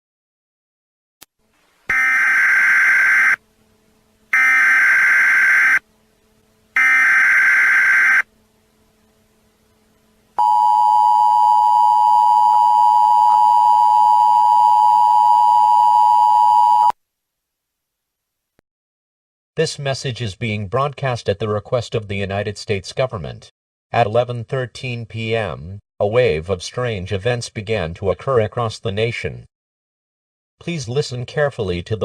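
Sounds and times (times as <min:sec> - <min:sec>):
shrill two-tone attention signal: 0:01.9 - 0:03.4, 0:04.4 - 0:05.8, 0:06.8 - 0:08.2
warbling data bursts: 0:01.9 - 0:03.4, 0:04.4 - 0:05.8, 0:06.8 - 0:08.2.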